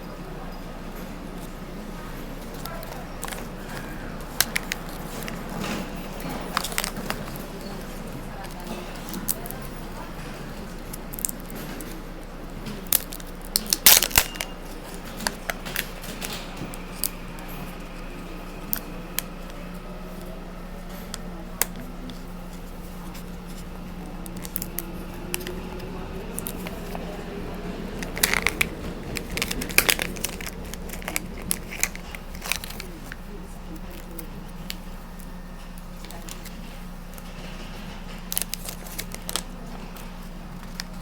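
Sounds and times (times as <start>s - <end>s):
train carriage hum: 0.0s - 41.0s
foil crinkling and tearing: 2.4s - 7.8s, 12.8s - 14.6s, 28.0s - 34.3s, 38.2s - 41.0s
plastic capsule clicks: 28.0s - 34.8s.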